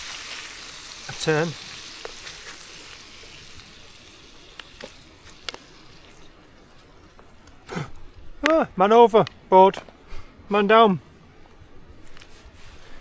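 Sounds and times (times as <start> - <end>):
food sizzling in a pan: 0.0 - 7.6.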